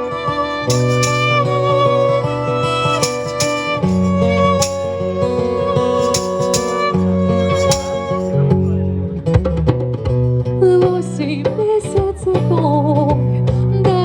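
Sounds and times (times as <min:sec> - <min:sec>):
violin melody: 0:00.0 - 0:08.7
live band playing pop: 0:03.0 - 0:05.2, 0:06.0 - 0:08.4.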